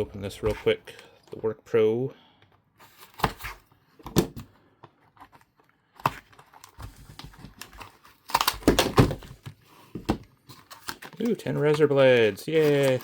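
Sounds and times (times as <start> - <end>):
packaging clicks and snaps: 5.3 - 9.4
packaging crackling: 6.0 - 9.3, 10.5 - 13.0.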